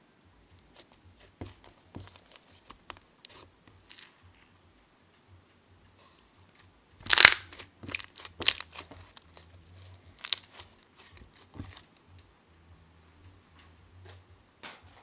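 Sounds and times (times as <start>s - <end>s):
crunching and crackling: 0.5s - 4.6s, 6.4s - 12.3s.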